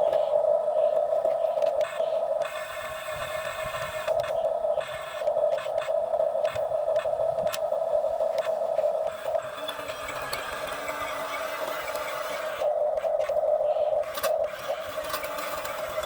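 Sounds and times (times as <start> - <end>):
excavator droning hum: 1.8 - 16.0
sharp clicks and clanks: 9.1 - 13.4, 14.0 - 16.0.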